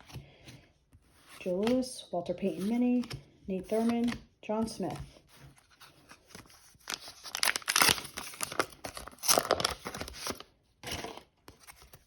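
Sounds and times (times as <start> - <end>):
plastic wrapper crinkling and tearing: 6.1 - 10.5.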